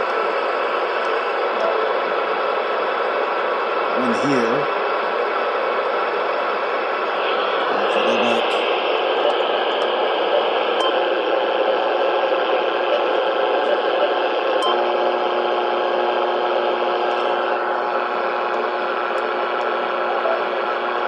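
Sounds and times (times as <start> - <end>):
radio static hiss: 3.8 - 4.8, 6.4 - 21.0.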